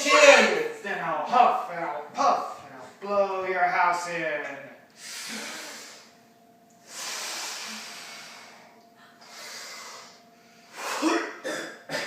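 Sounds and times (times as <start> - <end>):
person blowing through pursed lips: 5.0 - 6.1, 6.8 - 11.2.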